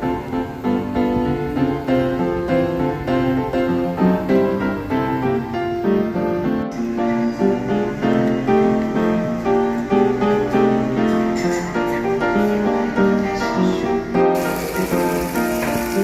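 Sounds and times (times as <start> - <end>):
piano music: 0.0 - 16.0
hiss: 14.4 - 16.0.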